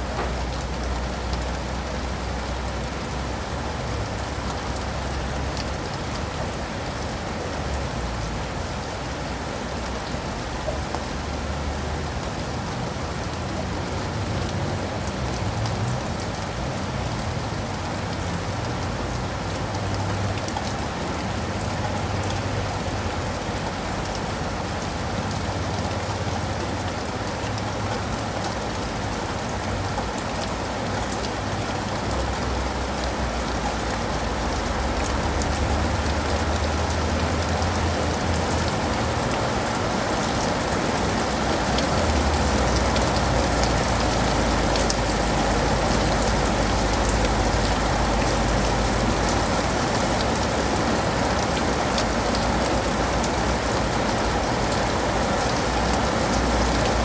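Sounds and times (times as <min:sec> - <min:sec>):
rain pattering on leaves and pavement: 0:00.0 - 0:57.0.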